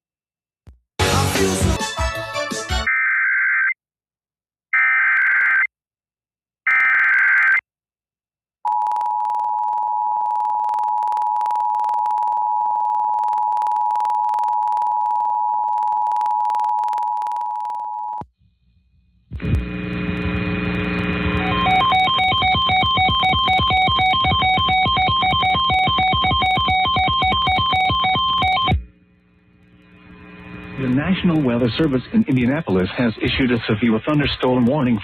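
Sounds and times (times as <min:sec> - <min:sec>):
music: 0:01.0 - 0:02.9, 0:21.4 - 0:28.8
screeching digital data bursts: 0:21.4 - 0:28.8
two-tone attention signal: 0:21.4 - 0:28.8.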